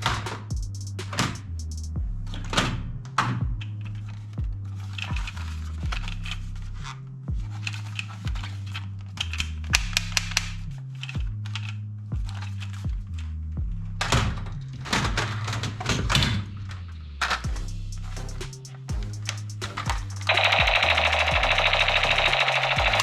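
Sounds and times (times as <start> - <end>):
background music with bass line: 0.0 - 23.0
toy guns clicking and firing: 19.8 - 23.0.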